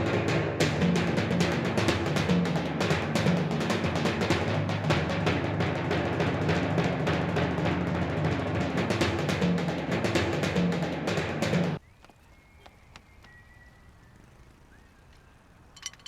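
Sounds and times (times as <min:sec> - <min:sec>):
timpani and drums music: 0:00.0 - 0:11.8.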